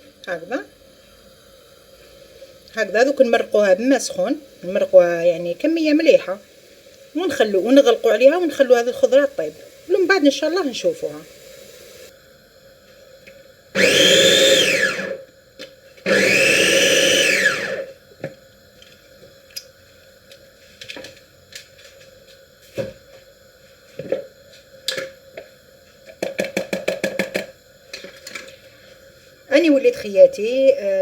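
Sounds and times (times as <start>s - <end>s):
electric blender motor whine: 2.6s - 12.2s, 13.7s - 18.3s.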